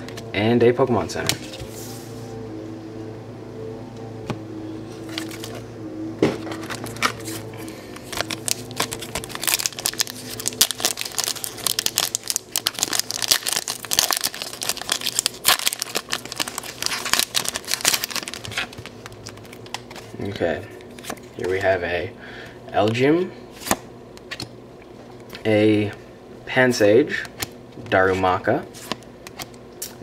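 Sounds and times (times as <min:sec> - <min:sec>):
foil wrapper tearing and crinkling: 0:06.8 - 0:20.0.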